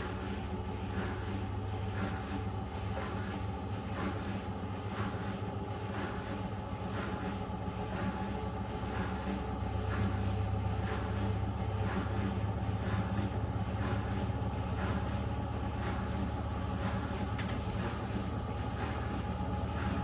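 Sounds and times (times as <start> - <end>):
washing machine motor hum: 0.0 - 20.0.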